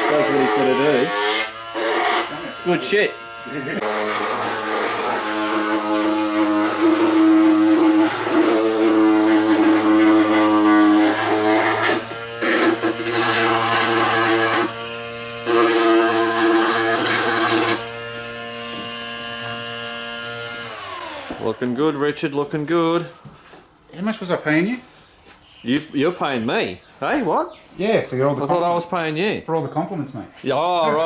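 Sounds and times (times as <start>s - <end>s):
handheld power tool motor buzzing: 0.0s - 21.6s.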